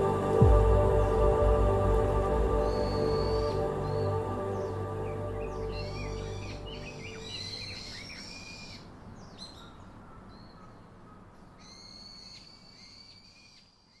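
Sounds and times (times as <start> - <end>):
small birds chirping: 2.5 - 14.0.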